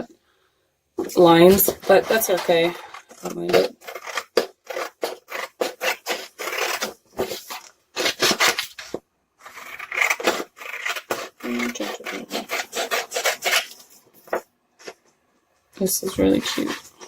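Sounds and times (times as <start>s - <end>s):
scissors snipping paper: 1.7s - 13.9s.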